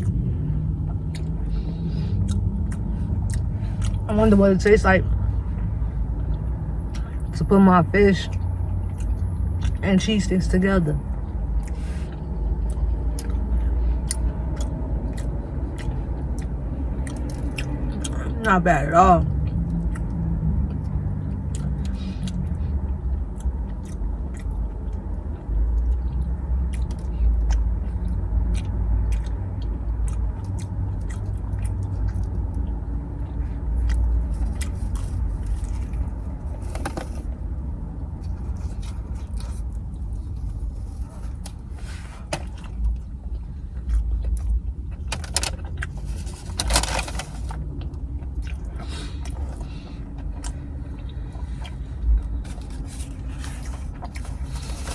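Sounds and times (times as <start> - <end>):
close-up chewing: 0.0 - 4.1, 5.1 - 7.4, 8.3 - 9.8, 11.1 - 18.5, 19.3 - 54.9
steady low rumble: 0.0 - 54.9
scraping or rustling noises: 38.3 - 42.6, 45.1 - 47.6, 52.4 - 54.9.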